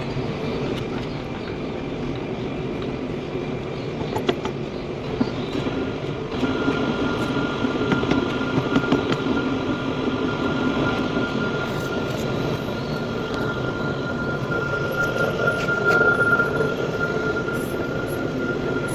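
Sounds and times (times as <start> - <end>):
steady high whine: 5.8 - 18.9.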